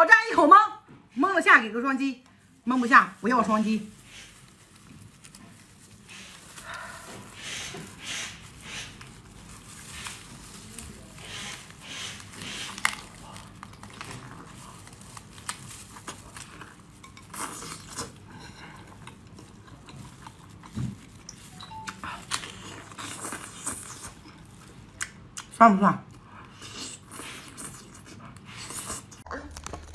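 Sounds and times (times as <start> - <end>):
chewing and mouth sounds: 11.2 - 29.9.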